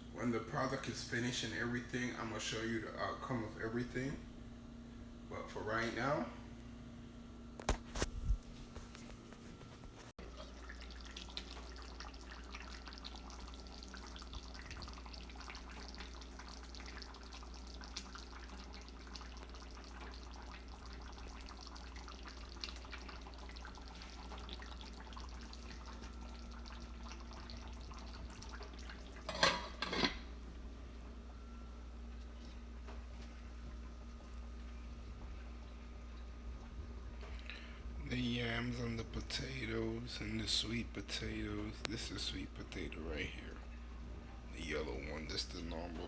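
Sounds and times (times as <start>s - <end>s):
steady low hum: 0.0s - 46.0s
pot of food bubbling: 10.2s - 37.3s
cookware clattering: 29.3s - 30.3s.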